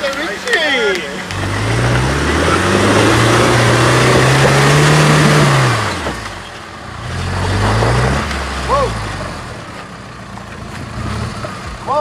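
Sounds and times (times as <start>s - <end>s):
engine revving under load: 1.1s - 12.0s.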